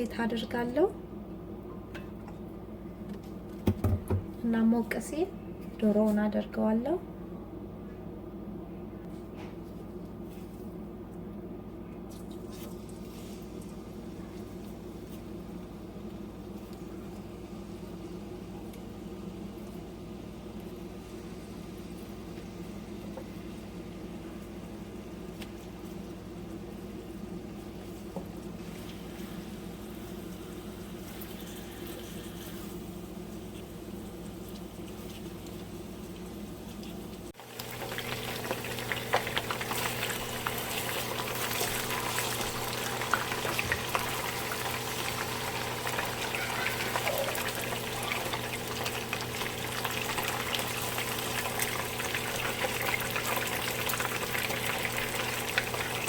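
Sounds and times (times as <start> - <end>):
chicken frying in hot oil: 12.3 - 56.0.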